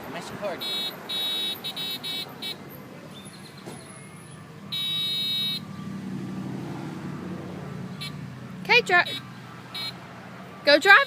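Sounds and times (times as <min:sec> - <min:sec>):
toy car horn beeping: 0:00.6 - 0:02.6, 0:04.7 - 0:05.6, 0:09.8 - 0:10.0.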